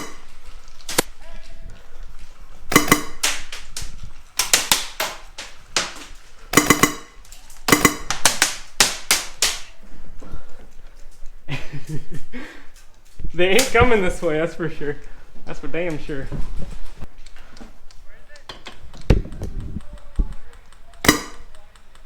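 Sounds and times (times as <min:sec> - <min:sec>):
airsoft gun firing bursts: 0:02.7 - 0:03.6, 0:04.4 - 0:05.9, 0:06.5 - 0:09.6, 0:19.2 - 0:22.0.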